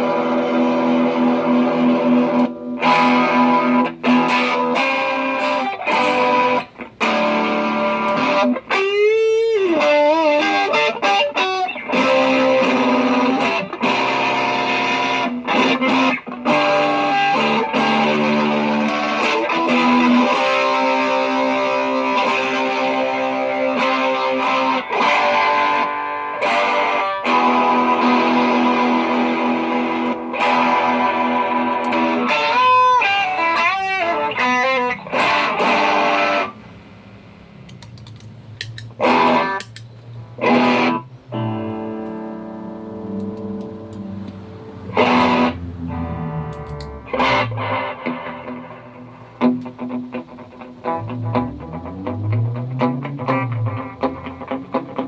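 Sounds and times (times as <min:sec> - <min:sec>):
electric guitar with effects: 0:00.0 - 0:55.0.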